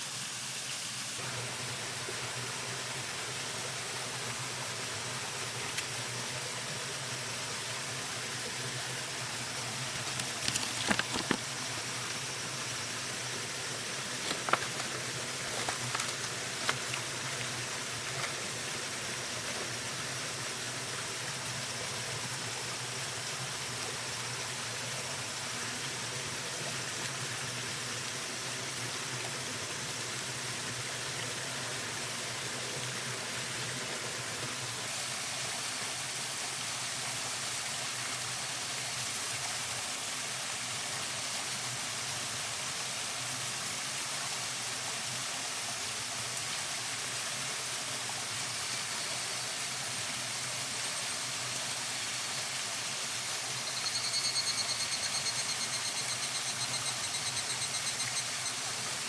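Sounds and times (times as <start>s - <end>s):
flowing water rushing: 1.2s - 59.0s
high pulsing call: 53.6s - 58.8s.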